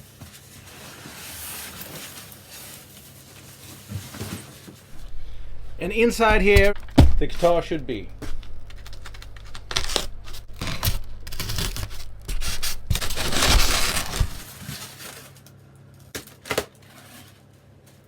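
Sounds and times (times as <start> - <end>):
styrofoam scraping and rustling: 3.8 - 15.4
sharp knocks: 4.9 - 14.4.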